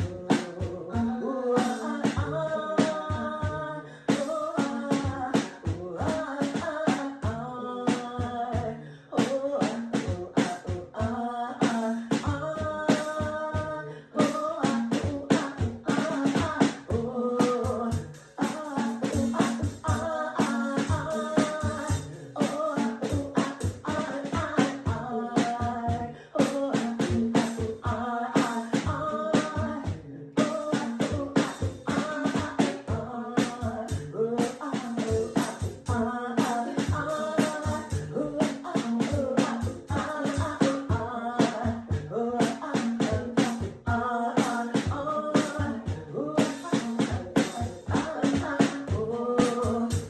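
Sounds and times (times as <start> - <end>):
steady drum beat: 0.0 - 50.0
woman singing: 0.0 - 50.0
music with percussive beat: 30.4 - 50.0.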